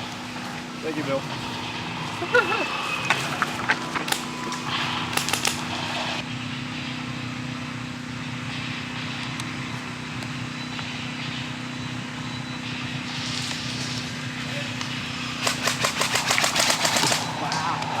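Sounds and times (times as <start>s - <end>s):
engine droning: 0.0s - 18.0s
sharp cracks: 2.7s - 6.2s, 14.8s - 18.0s.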